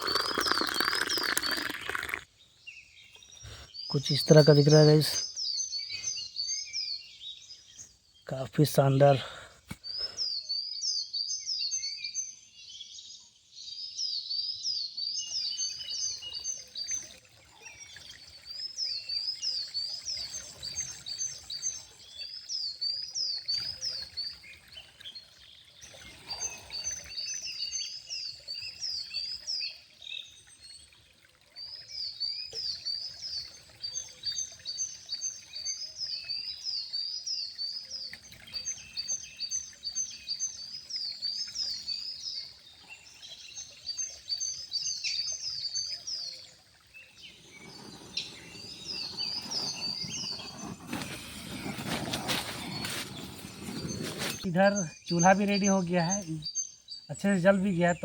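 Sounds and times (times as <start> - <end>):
bird chirping: 0.0 - 9.2, 31.7 - 58.0.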